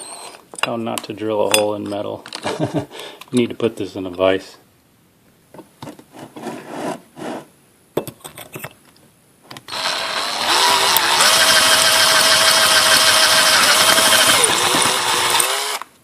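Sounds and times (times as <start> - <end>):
electric drill drilling steel: 9.7 - 16.0.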